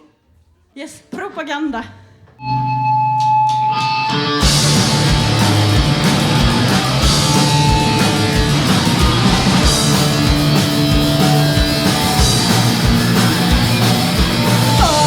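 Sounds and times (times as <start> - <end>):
punk rock band playing: 3.3 - 15.0.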